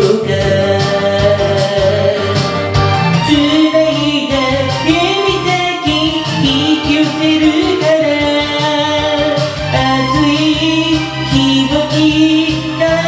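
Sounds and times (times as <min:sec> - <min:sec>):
backing track with bass and beat: 0:00.0 - 0:13.0
person singing pop song: 0:00.0 - 0:13.0.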